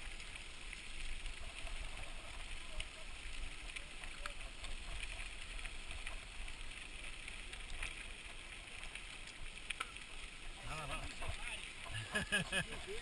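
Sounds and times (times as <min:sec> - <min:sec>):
small clicks: 0:02.8 - 0:10.3.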